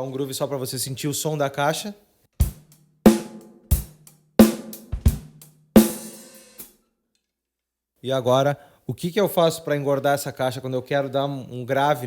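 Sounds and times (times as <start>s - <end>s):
drum kit groove: 2.4s - 6.7s.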